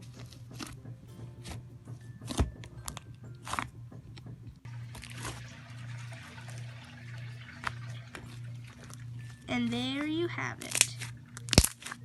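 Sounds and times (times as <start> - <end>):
slime crackling and crunching: 0.0 - 0.8, 4.8 - 5.7, 7.5 - 12.0
low steady hum: 0.0 - 12.0.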